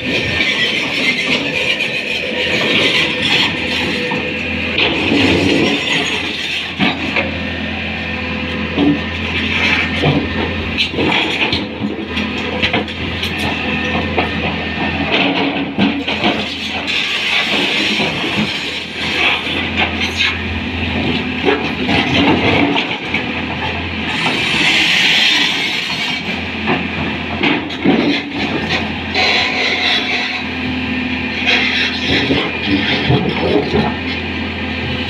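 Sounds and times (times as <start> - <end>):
excavator diesel engine running: 0.0 - 35.0
clanking and scraping knocks: 8.7 - 18.6.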